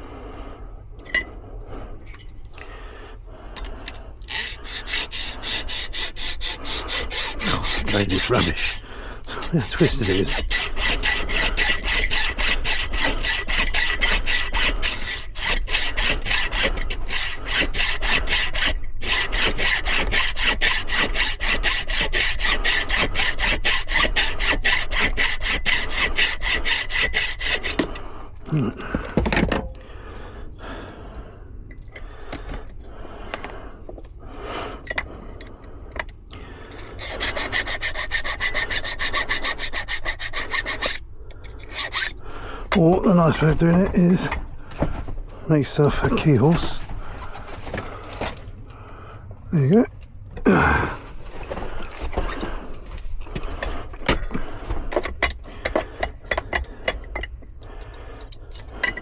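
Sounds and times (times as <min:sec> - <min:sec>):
hand saw cutting metal: 0:03.6 - 0:29.8, 0:36.6 - 0:48.4.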